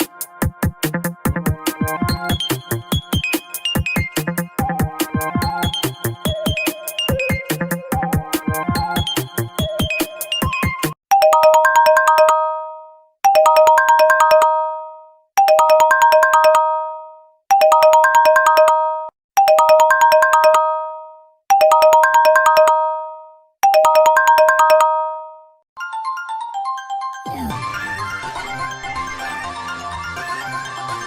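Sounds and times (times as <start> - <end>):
mobile phone ringtone: 2.2 - 8.2, 8.8 - 27.3.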